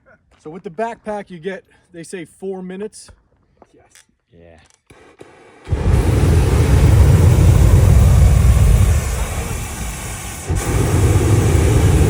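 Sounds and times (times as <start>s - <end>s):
flamethrower firing: 5.0s - 12.0s.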